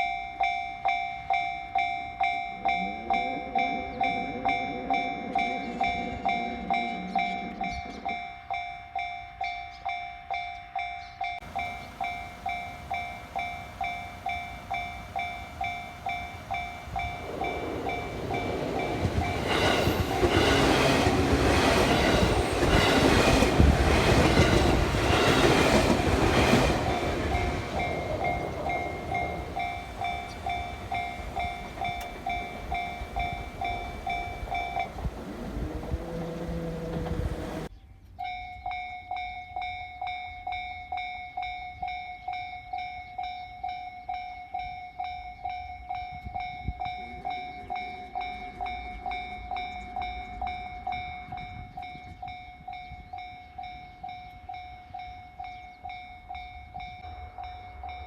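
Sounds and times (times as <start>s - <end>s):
level crossing bell ringing: 0.0s - 9.4s, 11.3s - 20.6s, 24.2s - 36.8s
train wheels clattering: 11.4s - 37.7s.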